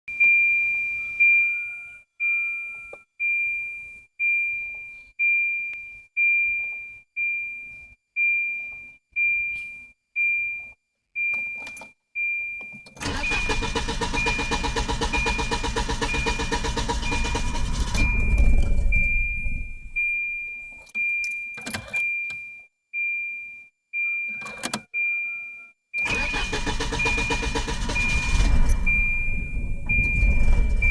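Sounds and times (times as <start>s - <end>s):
car engine cranking: 13.0s - 20.0s, 26.0s - 30.9s
car warning chime dinging: 13.0s - 22.5s, 24.0s - 30.9s.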